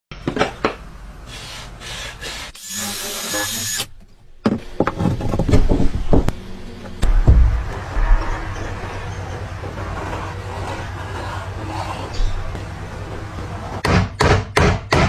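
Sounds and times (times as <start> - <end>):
power tool running: 1.3 - 3.9.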